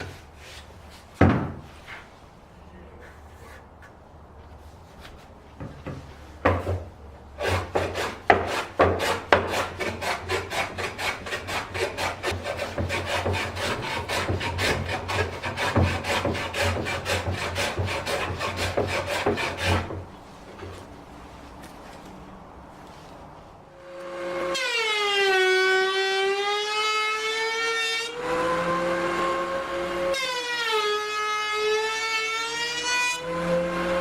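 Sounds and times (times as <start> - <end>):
hand tool rubbing on wood: 0.0 - 1.1.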